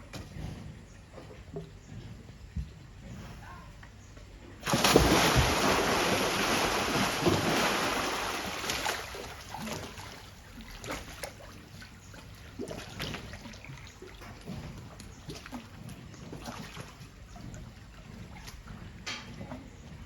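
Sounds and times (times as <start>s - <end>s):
crocodile splashing in water: 4.6s - 14.2s.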